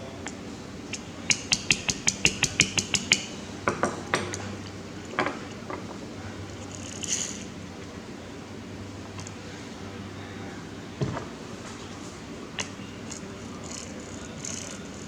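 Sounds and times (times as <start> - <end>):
scattered taps and knocks: 1.0 - 6.0.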